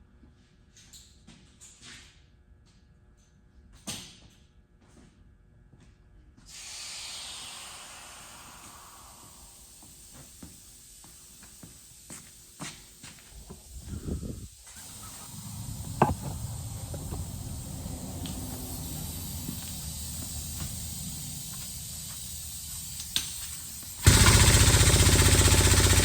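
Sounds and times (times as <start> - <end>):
low mechanical rumble: 13.4 - 26.0
sharp clicks and knocks: 15.9 - 17.3
machine hammering rapidly: 24.0 - 26.0.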